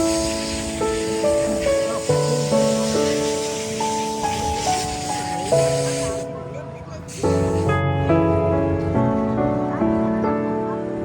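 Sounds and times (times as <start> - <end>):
steady hiss: 0.0 - 7.8.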